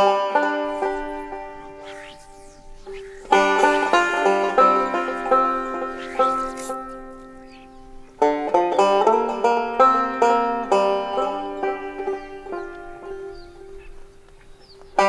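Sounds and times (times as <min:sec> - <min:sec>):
banjo picking: 0:03.0 - 0:13.6.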